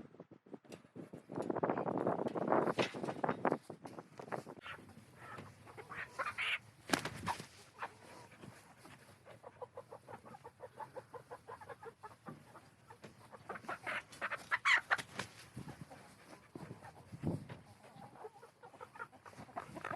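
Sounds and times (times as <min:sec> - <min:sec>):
chickens squawking and clucking: 0:04.3 - 0:19.9.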